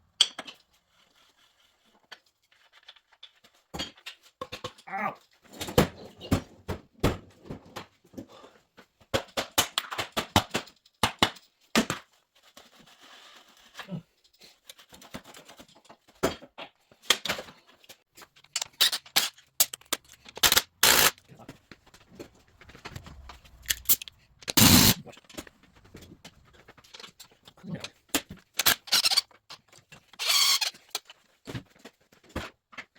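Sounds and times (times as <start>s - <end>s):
hand tools clicking on metal: 18.4s - 21.3s, 23.2s - 25.0s, 28.2s - 29.3s.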